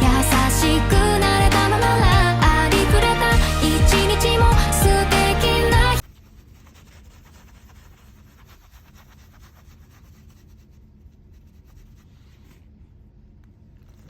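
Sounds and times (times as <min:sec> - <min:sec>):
low steady rumble: 0:00.0 - 0:06.0
rustling and light scratching: 0:06.0 - 0:12.9.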